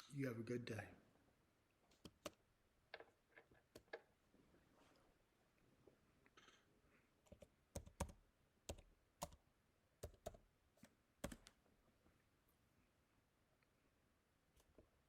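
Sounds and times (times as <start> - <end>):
sharp clicks and taps: 1.9 - 3.1, 3.7 - 4.1.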